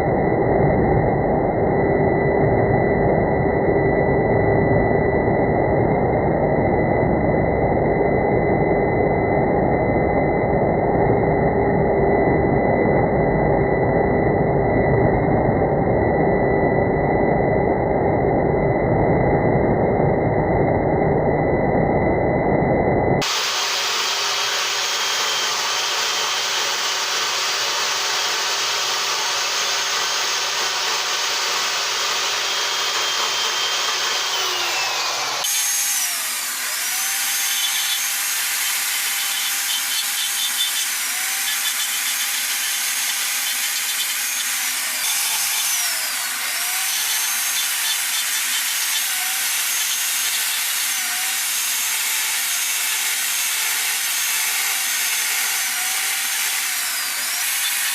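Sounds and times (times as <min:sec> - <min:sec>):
power carving tool grinding wood: 0:23.2 - 0:57.9.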